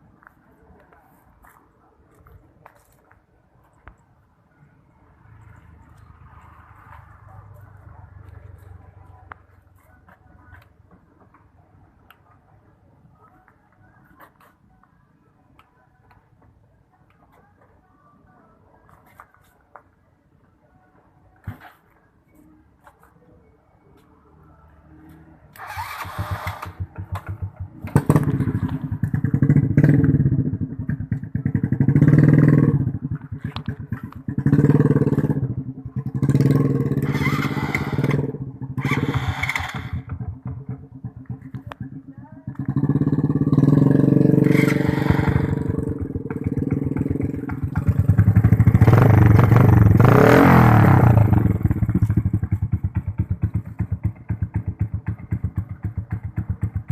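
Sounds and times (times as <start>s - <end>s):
motorcycle engine revving: 25.2s - 56.9s.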